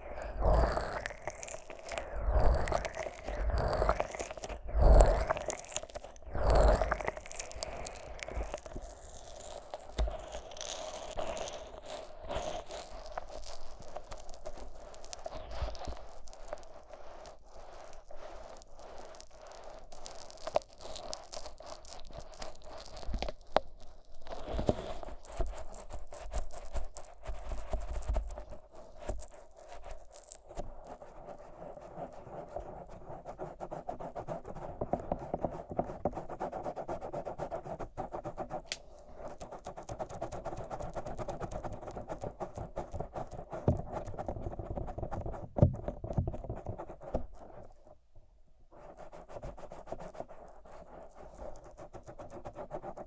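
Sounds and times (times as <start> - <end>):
fingers rubbing microphone: 0.0 - 47.9, 48.8 - 53.0
thumps: 45.4 - 46.5.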